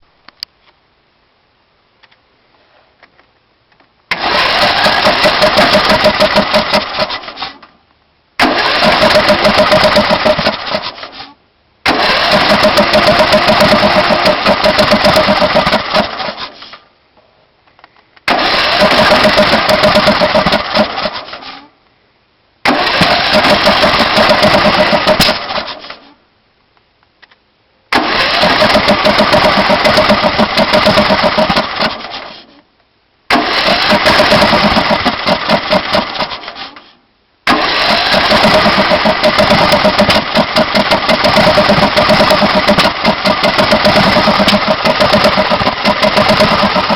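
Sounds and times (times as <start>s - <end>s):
engine cranking by electric starter: 4.1s - 7.7s, 8.4s - 16.8s, 18.2s - 21.7s, 22.6s - 26.2s, 27.9s - 32.5s, 33.3s - 46.9s.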